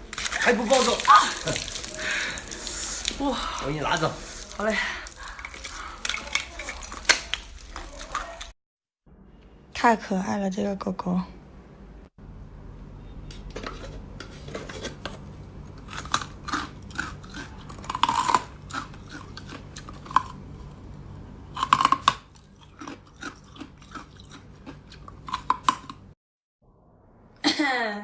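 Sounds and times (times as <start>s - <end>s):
ice being chewed: 0.0s - 8.5s, 15.7s - 26.2s.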